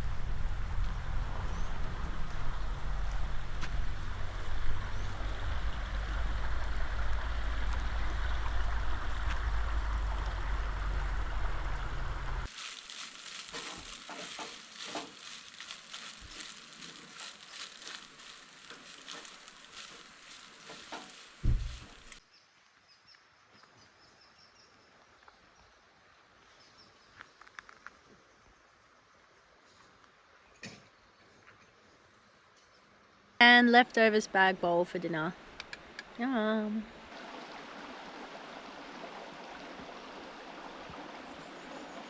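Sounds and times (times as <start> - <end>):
low rumble with hiss: 0.0 - 12.5
loud knock: 21.4 - 21.8.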